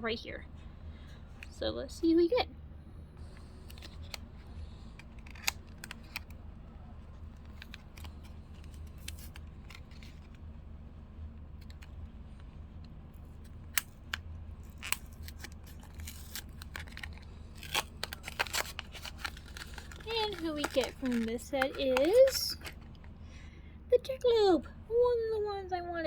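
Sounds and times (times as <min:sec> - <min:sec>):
low hum: 0:00.0 - 0:26.0
cardboard rustling: 0:03.2 - 0:10.4, 0:13.2 - 0:23.1
packaging clicks and snips: 0:03.2 - 0:10.4, 0:11.6 - 0:23.1.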